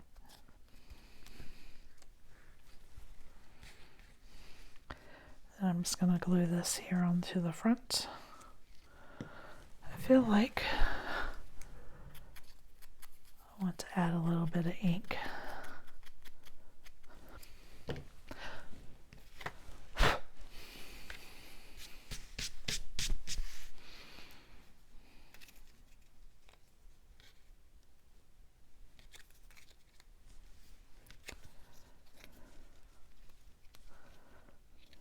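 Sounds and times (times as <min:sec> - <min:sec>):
paper rustling and rubbing: 0:21.8 - 0:23.8.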